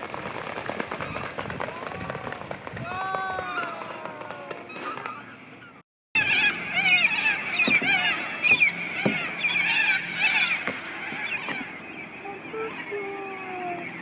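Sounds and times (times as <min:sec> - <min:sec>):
swans honking: 0:03.4 - 0:14.0.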